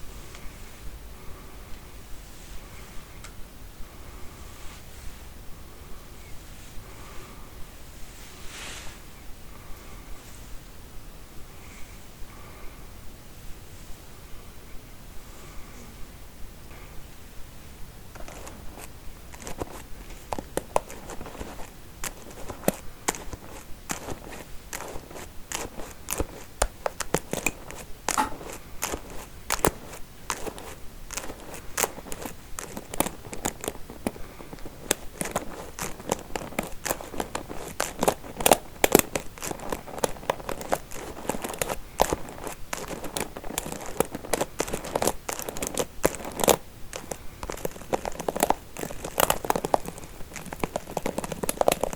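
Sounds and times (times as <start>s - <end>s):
comb teeth clicking: 18.2s - 51.9s.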